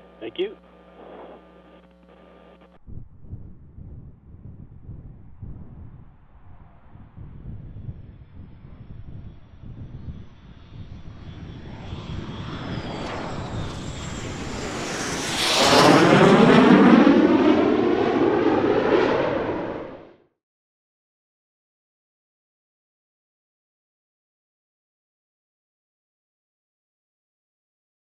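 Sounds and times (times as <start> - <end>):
jet aircraft flying past: 5.6 - 20.2.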